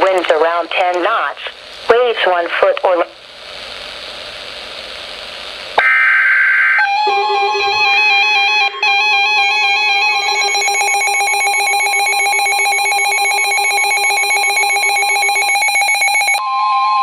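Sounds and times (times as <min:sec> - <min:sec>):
chirping electronic data tones: 0:10.1 - 0:16.4.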